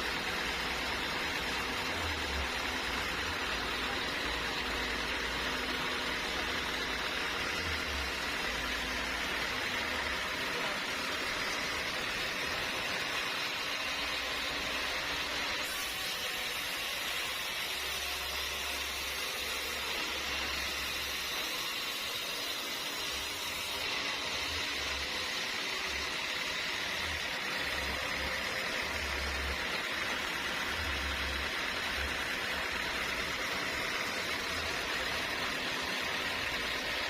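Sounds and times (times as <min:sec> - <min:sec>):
machine noise with hiss: 0:00.0 - 0:37.0.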